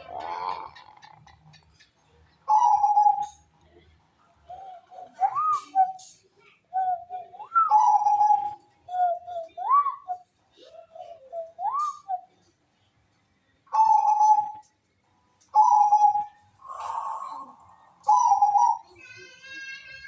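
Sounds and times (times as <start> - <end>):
dove cooing: 0.0 - 1.6, 2.5 - 3.8, 4.5 - 6.2, 6.8 - 12.4, 13.7 - 14.6, 15.5 - 19.0.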